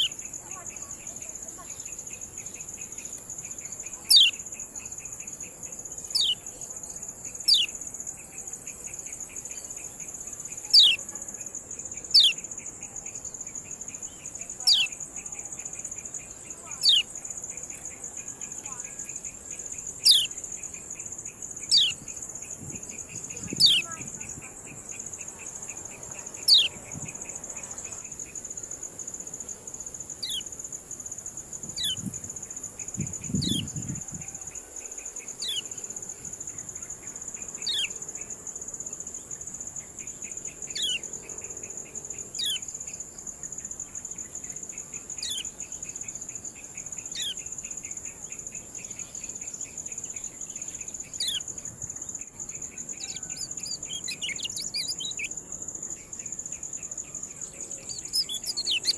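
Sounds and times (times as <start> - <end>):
bird sharp downward calls: 6.1 - 6.4, 23.6 - 24.0, 53.0 - 55.3, 57.9 - 58.9.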